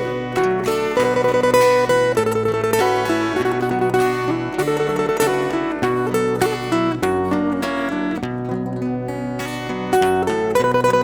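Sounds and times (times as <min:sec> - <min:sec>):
acoustic guitar chords: 0:00.0 - 0:11.0
plucked-string lead melody: 0:00.0 - 0:11.0.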